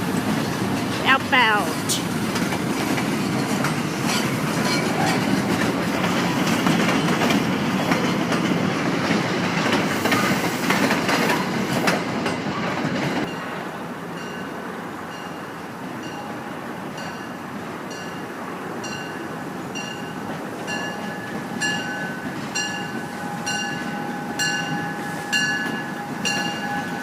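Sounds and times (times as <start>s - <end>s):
train rolling past: 0.0s - 27.0s
wheels clicking over rail joints: 1.8s - 13.4s.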